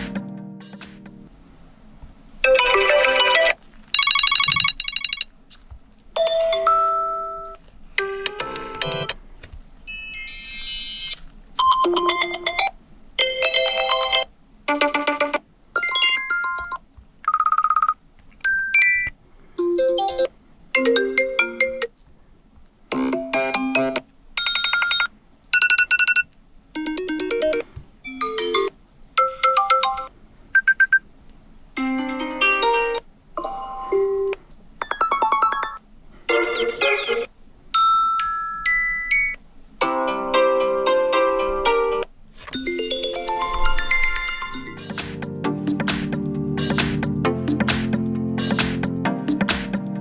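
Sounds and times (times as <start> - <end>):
phone ringtone snippets: 2.5 - 5.3, 6.2 - 9.1, 32.1 - 39.4, 42.6 - 45.8.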